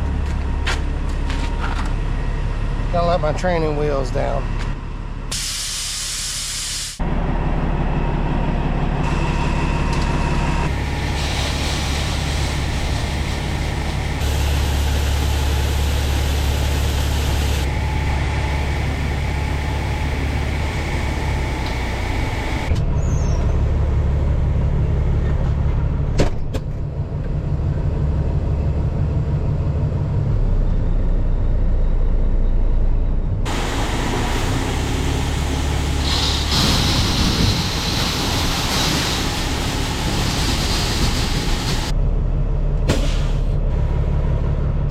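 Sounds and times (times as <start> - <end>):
truck engine hum and road noise: 0.0 - 44.9.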